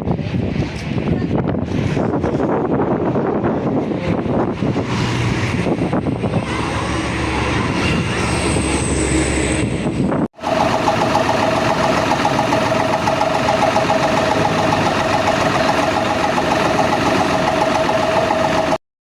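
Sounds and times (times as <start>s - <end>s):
bus engine idling: 10.4s - 18.8s
constant whine: 10.4s - 18.8s
rhythmic ticking: 10.4s - 18.8s.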